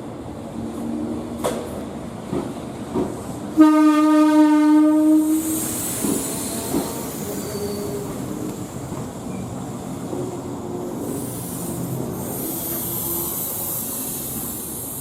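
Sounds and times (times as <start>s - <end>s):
train running: 0.0s - 15.0s
train horn: 3.6s - 5.5s.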